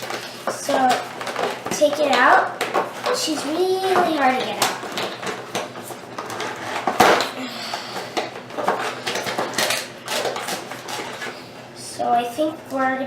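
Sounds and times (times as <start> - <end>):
toy packaging crinkling: 8.5 - 11.3.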